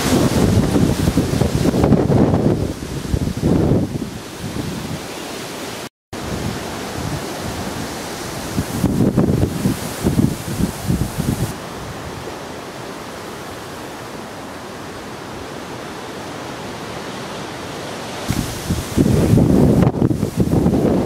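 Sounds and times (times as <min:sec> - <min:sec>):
wind buffeting microphone: 0:00.0 - 0:05.1, 0:06.2 - 0:12.3, 0:18.3 - 0:21.0
steady rushing hiss: 0:00.0 - 0:21.0.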